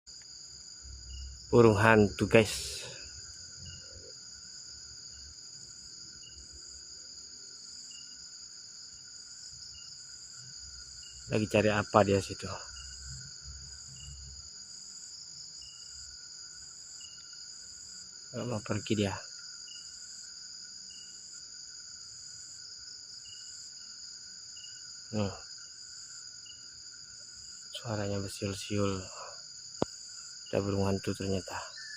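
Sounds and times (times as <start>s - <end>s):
crickets and insects trilling: 0.1s - 31.9s
faint high chirps: 31.2s - 31.9s.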